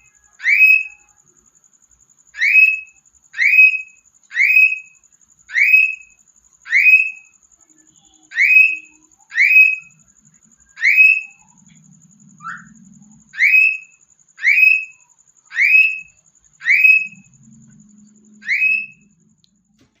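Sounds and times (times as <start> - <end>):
cockatiel whistled calls: 0.0 - 1.0, 2.4 - 4.9, 5.5 - 6.1, 6.7 - 7.2, 8.3 - 9.9, 10.8 - 11.4, 13.4 - 17.2, 18.4 - 19.0.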